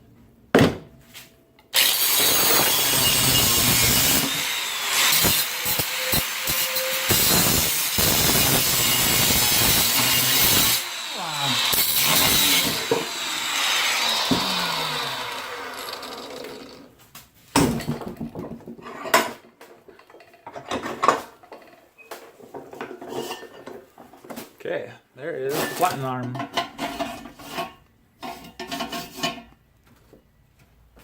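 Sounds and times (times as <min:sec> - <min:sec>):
power tool winding down: 0:01.8 - 0:17.0.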